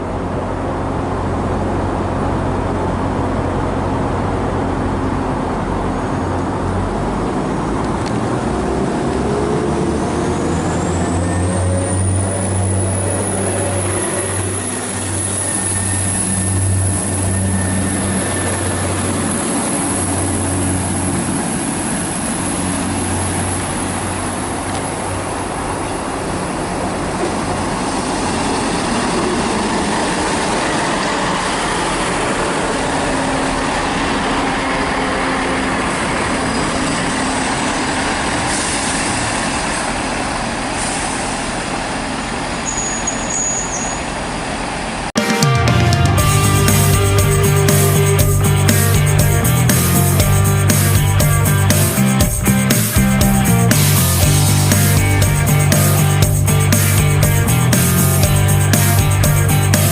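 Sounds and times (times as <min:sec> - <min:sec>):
train engine drone: 0:00.0 - 0:59.9
steady rushing noise: 0:45.4 - 0:59.9.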